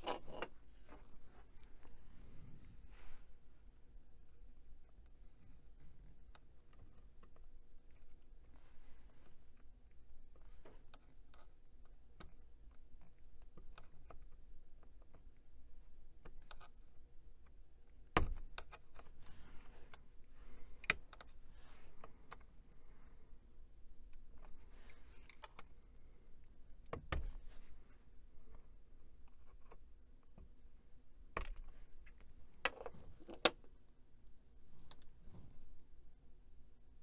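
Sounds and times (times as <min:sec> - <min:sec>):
soft scraping and rustling: 0:00.0 - 0:03.4, 0:19.1 - 0:23.2, 0:34.6 - 0:35.8.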